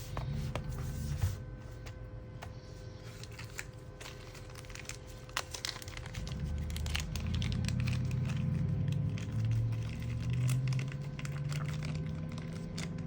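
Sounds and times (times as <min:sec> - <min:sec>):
crinkly rustling: 0:03.0 - 0:13.0
low rumble: 0:05.6 - 0:13.0.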